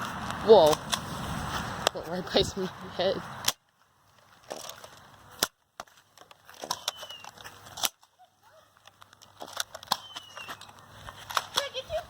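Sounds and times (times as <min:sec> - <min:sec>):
rustling: 0:03.4 - 0:12.0.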